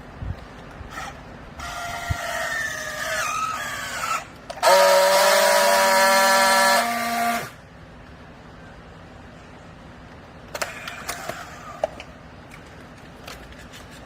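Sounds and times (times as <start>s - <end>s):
hydraulic baler whining: 0.9s - 7.7s.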